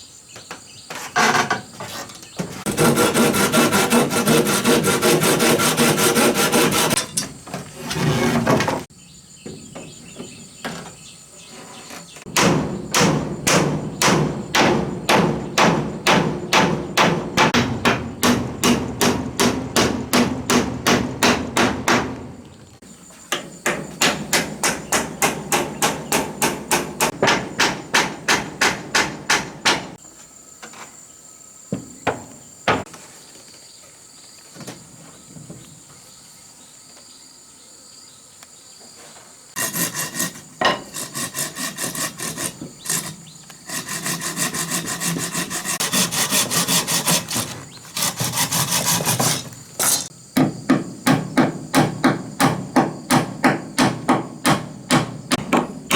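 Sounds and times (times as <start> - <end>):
insects chirping: 0.0 - 55.9
rapid rough strokes on wood: 0.9 - 7.0, 7.7 - 8.9, 39.6 - 50.1.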